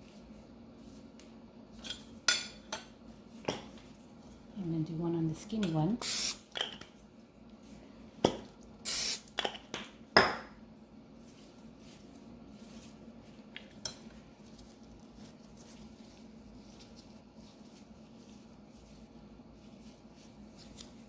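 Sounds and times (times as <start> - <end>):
cooking spray hissing: 6.0 - 6.4, 8.8 - 9.3.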